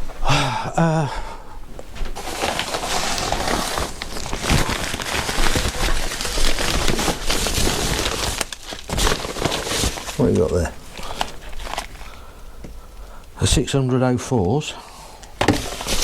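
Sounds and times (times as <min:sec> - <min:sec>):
packaging crinkling and rustling: 0:02.0 - 0:12.3, 0:15.2 - 0:16.0.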